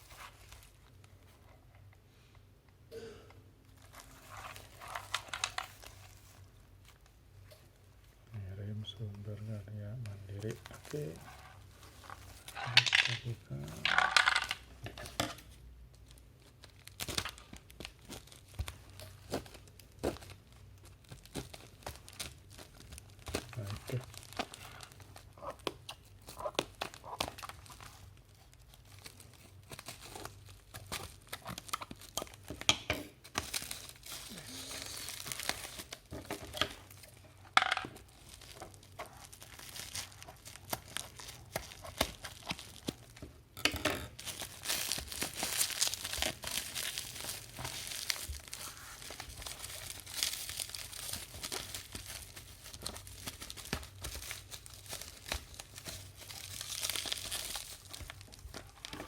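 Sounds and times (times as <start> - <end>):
plastic and paper crinkling: 0.0 - 1.4, 3.7 - 43.5, 44.1 - 59.0
packaging tearing: 33.3 - 36.1, 44.2 - 59.0.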